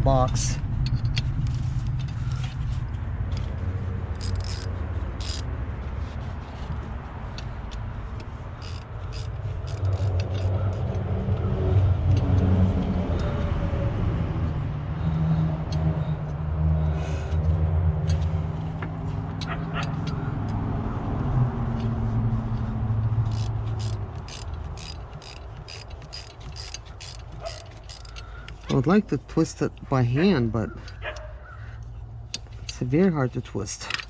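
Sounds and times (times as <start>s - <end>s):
motor vehicle rumble: 0.0s - 34.0s
metal parts and tools clinking: 4.1s - 5.5s, 7.4s - 11.0s, 23.3s - 29.8s.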